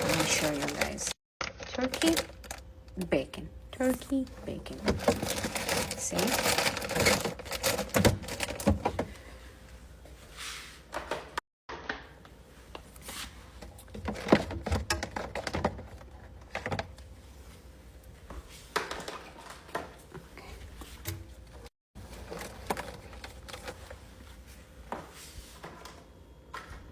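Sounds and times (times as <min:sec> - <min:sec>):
packages knocking and clicking: 0:00.0 - 0:01.2, 0:04.7 - 0:09.1, 0:13.8 - 0:17.0
plastic rustling: 0:00.0 - 0:02.6, 0:03.8 - 0:09.1.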